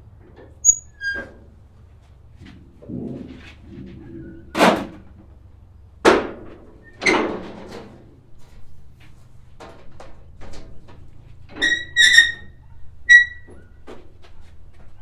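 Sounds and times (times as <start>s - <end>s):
scraping and handling noise: 1.2s - 5.4s.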